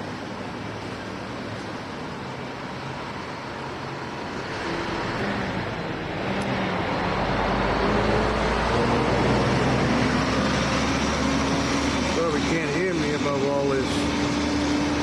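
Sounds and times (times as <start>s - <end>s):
deep engine rumble: 0.0s - 15.0s
vehicles driving past: 0.0s - 15.0s.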